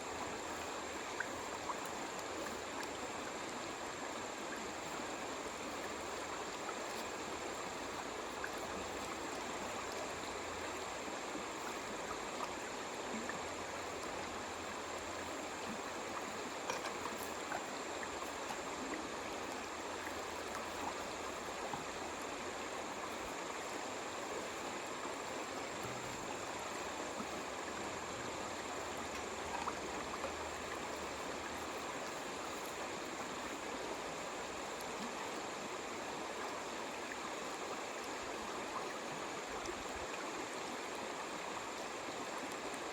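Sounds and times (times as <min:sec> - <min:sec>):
water rushing and splashing: 0:00.0 - 0:42.9
small splashes and clicks: 0:15.7 - 0:18.8.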